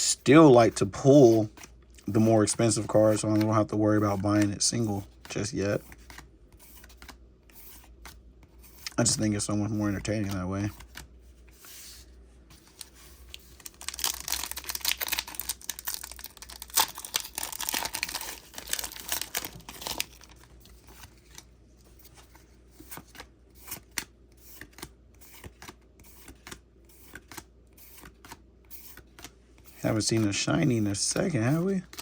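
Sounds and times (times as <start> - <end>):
foil wrapper tearing and crinkling: 13.4 - 20.4
cards clicking and slapping: 22.8 - 29.4.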